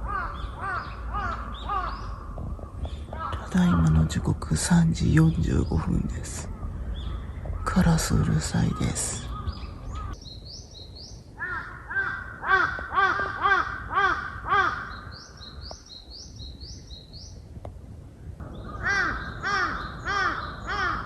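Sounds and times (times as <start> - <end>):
crows cawing: 0.0 - 4.0, 6.5 - 10.2, 11.4 - 15.7, 18.5 - 21.0.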